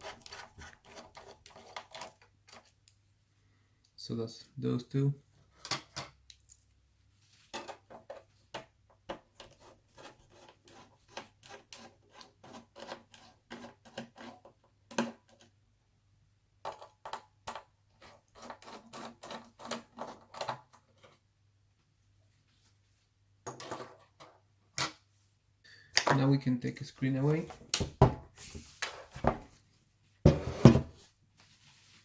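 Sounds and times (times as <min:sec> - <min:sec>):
clicks and scrapes on laptop parts: 0:00.0 - 0:02.8, 0:09.1 - 0:15.5, 0:16.7 - 0:21.2.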